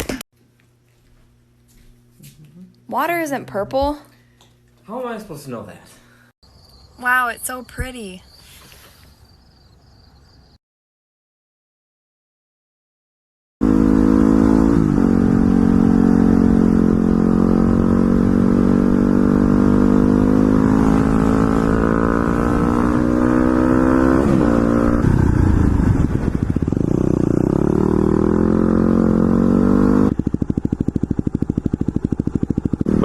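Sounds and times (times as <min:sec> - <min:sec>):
vehicle engine running: 0:25.0 - 0:33.0
engine idling with fast pulse: 0:30.1 - 0:33.0.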